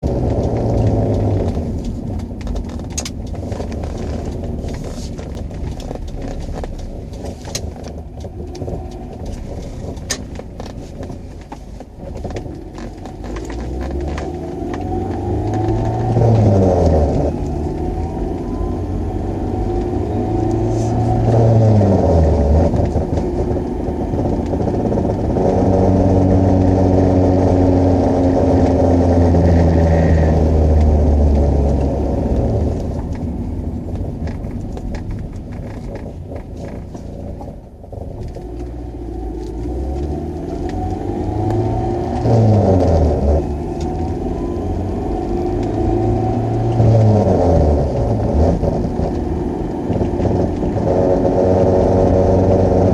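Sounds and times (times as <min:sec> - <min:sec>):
van engine droning: 0:00.0 - 0:52.9.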